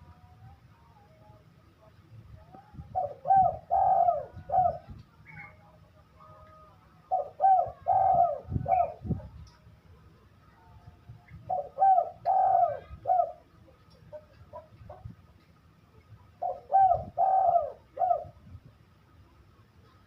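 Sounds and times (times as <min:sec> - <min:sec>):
dove cooing: 0:02.9 - 0:05.6, 0:07.0 - 0:09.4, 0:11.4 - 0:15.2, 0:16.4 - 0:18.4.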